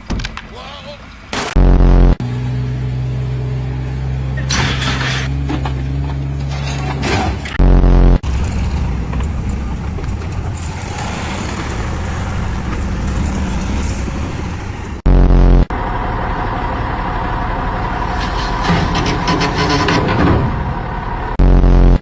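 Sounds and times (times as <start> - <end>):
heavy machinery engine rumbling: 0.0 - 22.0
loud blaring tone: 1.4 - 2.2, 14.2 - 15.8, 21.4 - 22.0.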